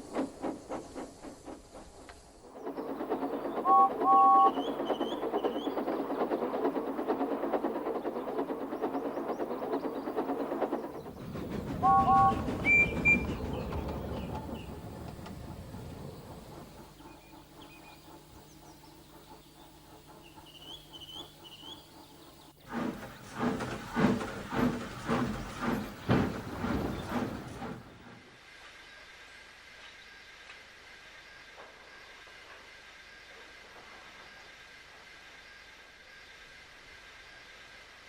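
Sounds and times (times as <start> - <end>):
wheels clicking over rail joints: 0.0 - 28.3
steam locomotive chuffing: 0.0 - 28.8
two-note train whistle: 3.6 - 4.8, 11.7 - 13.5
birds chirping: 7.4 - 28.1.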